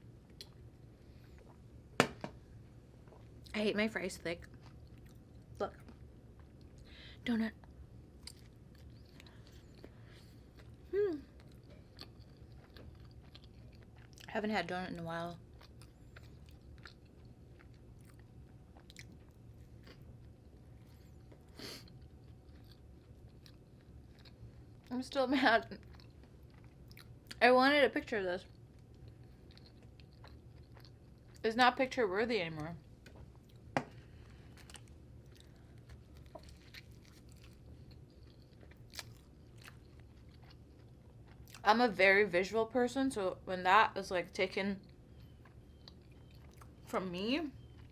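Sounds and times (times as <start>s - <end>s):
person chewing food: 4.4s - 6.9s, 8.1s - 14.3s, 15.4s - 24.9s, 25.8s - 27.4s, 28.5s - 31.4s, 33.0s - 41.6s, 44.8s - 46.9s.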